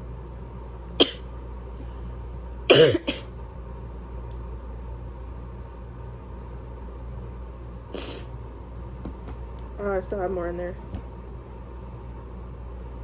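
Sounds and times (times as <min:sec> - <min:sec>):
woman sneezing: 0:01.0 - 0:01.2, 0:02.7 - 0:03.2, 0:08.0 - 0:08.3.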